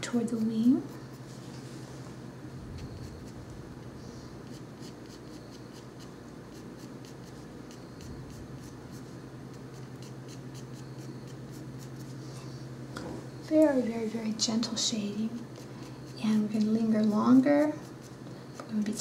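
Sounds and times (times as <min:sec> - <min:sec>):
pencil scratching on paper: 0:04.4 - 0:12.2, 0:15.1 - 0:19.0.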